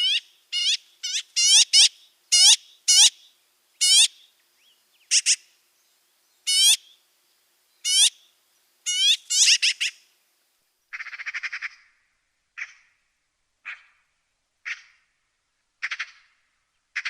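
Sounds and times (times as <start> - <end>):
magpie calling: 0.0 - 4.3, 5.1 - 5.5, 6.5 - 7.0, 7.8 - 10.0, 10.9 - 12.0, 12.6 - 13.0, 14.6 - 15.1, 15.8 - 16.4
magpie rattling chatter: 8.9 - 10.0.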